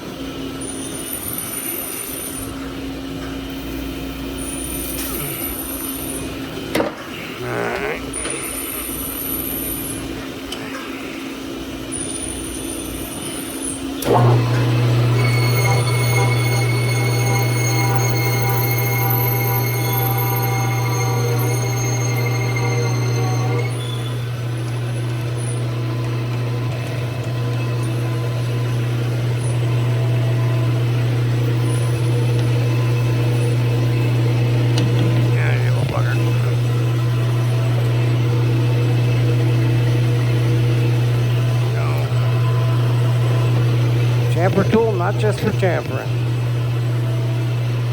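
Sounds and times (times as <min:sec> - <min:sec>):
metal lathe humming: 0:14.0 - 0:47.9
deeper loud hum: 0:14.1 - 0:47.9
thin high whine: 0:15.1 - 0:24.6.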